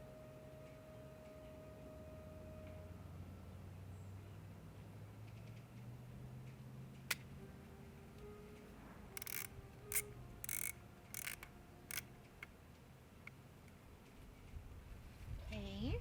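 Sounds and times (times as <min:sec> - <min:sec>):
film-advance thumbwheel scraping: 0:09.1 - 0:12.5
camera shutter click: 0:09.2 - 0:12.1
small ticks: 0:09.2 - 0:12.5.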